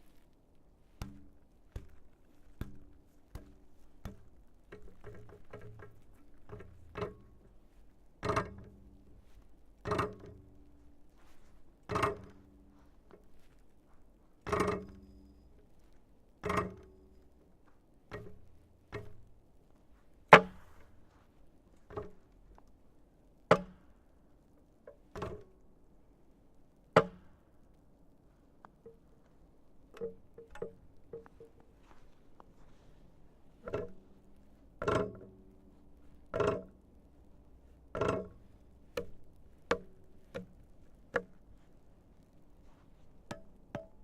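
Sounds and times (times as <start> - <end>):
short ringing hum: 14.7 - 15.8.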